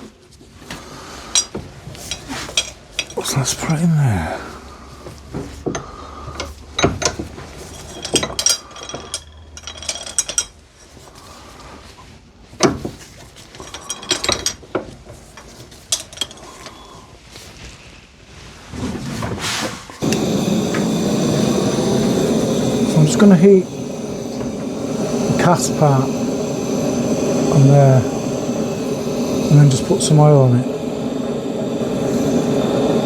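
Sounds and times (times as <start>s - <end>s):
metal clinks and knocks: 6.8s - 10.6s
heating tool blowing: 20.0s - 33.0s.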